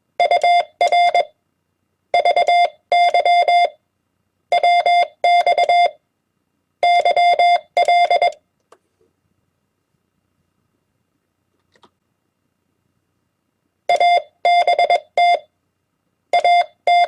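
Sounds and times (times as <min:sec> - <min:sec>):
morse code beeps: 0:00.2 - 0:01.3, 0:02.2 - 0:03.8, 0:04.5 - 0:06.0, 0:06.8 - 0:08.4, 0:13.9 - 0:15.5, 0:16.4 - 0:17.0.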